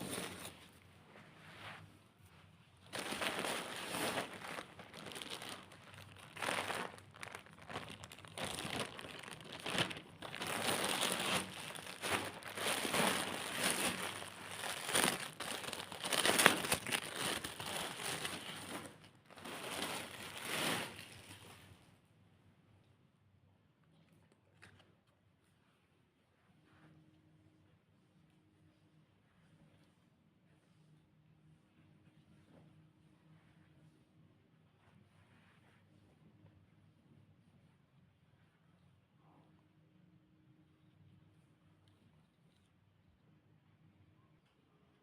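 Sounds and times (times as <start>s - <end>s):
packaging crinkling and rustling: 0.0s - 0.7s, 2.8s - 21.7s.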